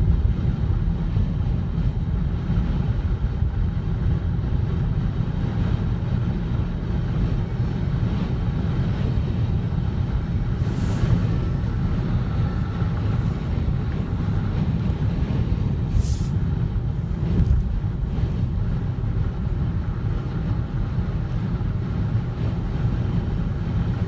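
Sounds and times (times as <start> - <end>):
wind buffeting microphone: 0.0 - 24.0
short hiss: 15.9 - 16.4.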